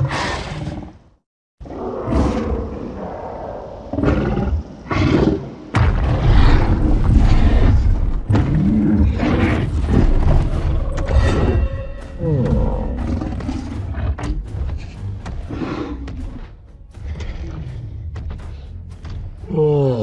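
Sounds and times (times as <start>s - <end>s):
giant ape roaring and growling: 1.6s - 14.6s
deep rumble: 5.7s - 18.7s.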